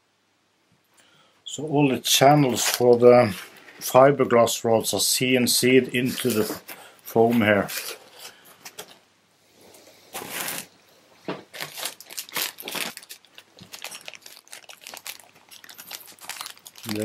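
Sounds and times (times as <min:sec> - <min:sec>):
plastic packaging crinkling: 0:02.4 - 0:03.7, 0:06.0 - 0:09.0, 0:10.1 - 0:10.8, 0:11.4 - 0:17.0.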